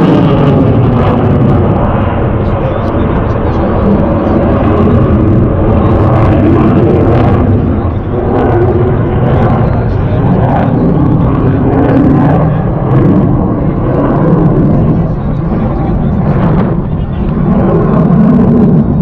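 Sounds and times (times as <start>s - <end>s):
aircraft engine noise: 0.0s - 19.0s
people's voices: 2.2s - 5.0s, 14.7s - 17.7s.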